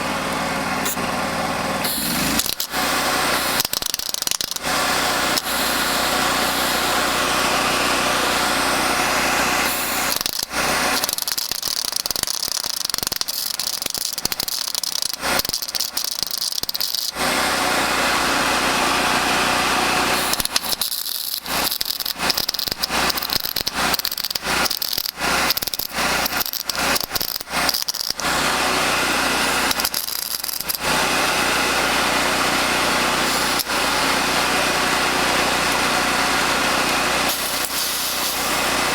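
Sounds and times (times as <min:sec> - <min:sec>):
welder arc crackling: 0:01.8 - 0:08.3, 0:09.1 - 0:17.2, 0:19.9 - 0:31.6, 0:33.0 - 0:38.9.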